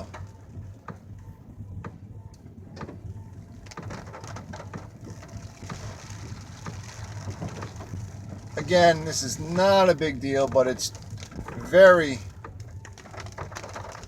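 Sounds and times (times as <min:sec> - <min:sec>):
car rolling low rumble: 0:00.0 - 0:14.0
debris knocking under tyres: 0:02.7 - 0:14.0
wind and rain hiss: 0:03.3 - 0:13.8.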